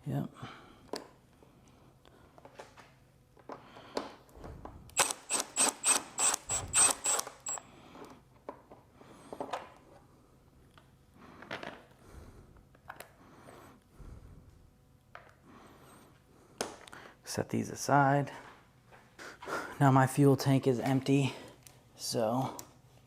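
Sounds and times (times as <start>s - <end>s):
wrench ratcheting squeakily: 5.0s - 7.6s.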